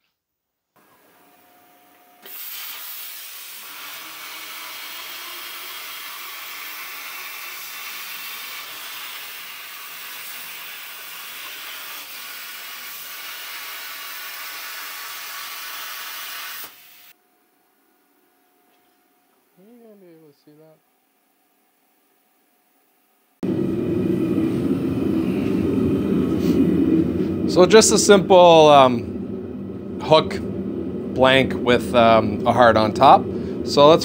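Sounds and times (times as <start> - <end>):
plasma cutter hissing: 2.2 - 17.1
faint hum: 17.2 - 34.0.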